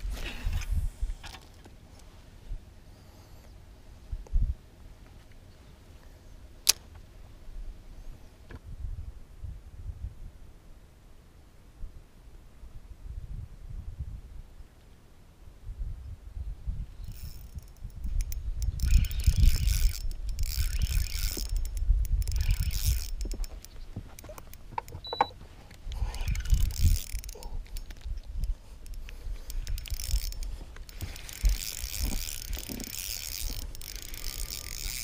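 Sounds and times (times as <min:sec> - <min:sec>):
fishing reel whirring: 0:17.0 - 0:24.6, 0:25.8 - 0:35.0.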